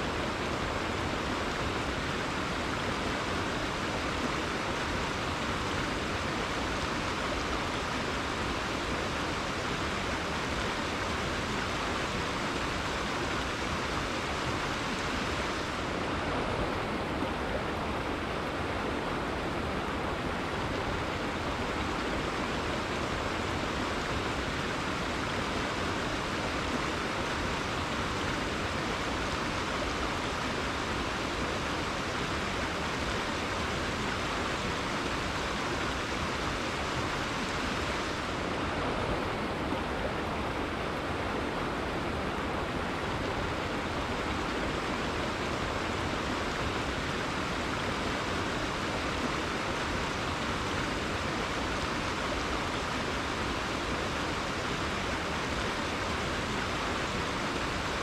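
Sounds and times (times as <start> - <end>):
river water rushing: 0.0 - 58.0.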